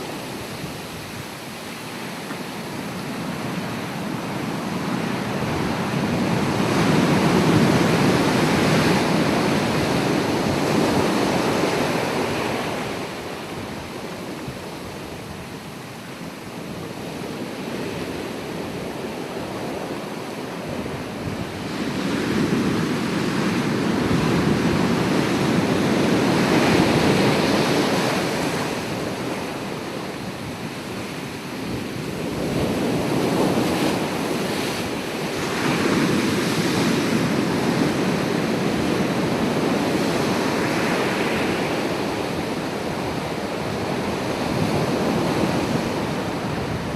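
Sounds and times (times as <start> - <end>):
ocean waves breaking: 17.0 - 46.9.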